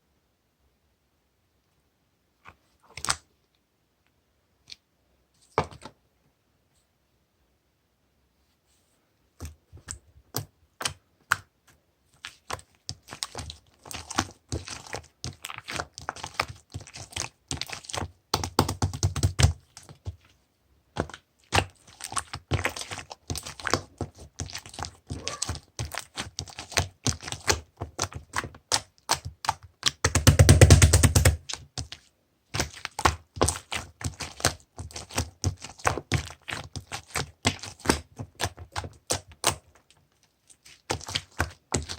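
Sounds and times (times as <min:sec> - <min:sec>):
slime squished by hand: 0:20.9 - 0:41.9.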